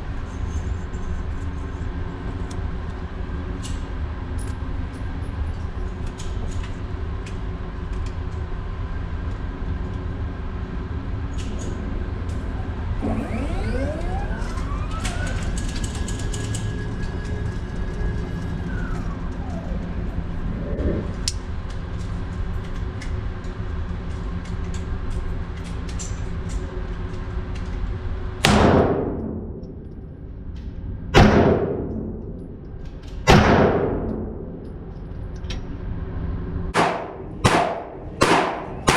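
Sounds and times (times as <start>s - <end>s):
rising and falling whine: 12.3s - 21.8s
pistol shots: 36.8s - 38.9s.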